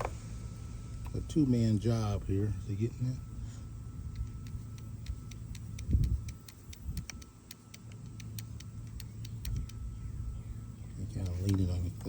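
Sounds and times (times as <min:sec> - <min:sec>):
dull thump: 0:00.0 - 0:00.2
hydraulic crimper clicking: 0:04.1 - 0:09.8.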